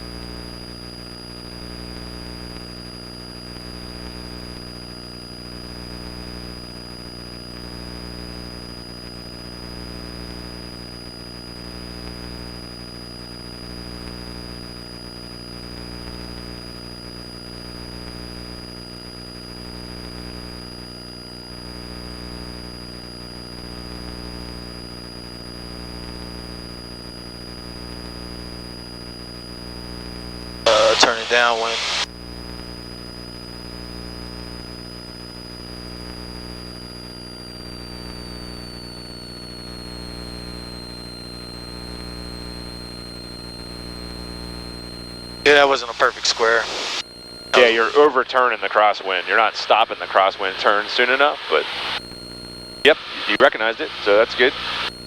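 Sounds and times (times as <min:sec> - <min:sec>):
thin high whine: 0:30.7 - 0:32.1, 0:43.2 - 0:55.0.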